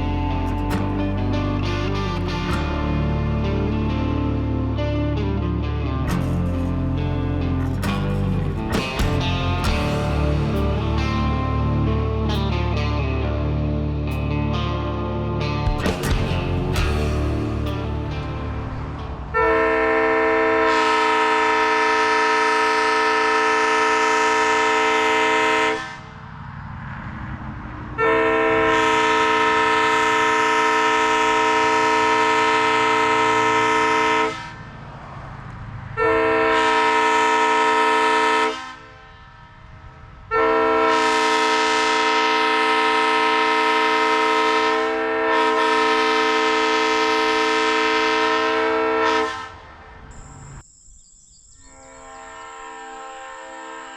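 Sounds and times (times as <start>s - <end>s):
air horn chord blasts: 15.8s - 26.1s, 28.0s - 34.7s, 36.0s - 39.4s, 40.3s - 50.1s, 51.7s - 53.9s.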